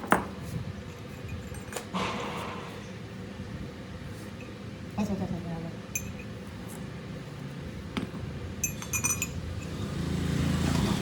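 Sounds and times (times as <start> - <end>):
steady low hum: 0.0 - 10.4
metal parts clinking: 0.8 - 1.9, 6.0 - 6.4, 8.6 - 9.8.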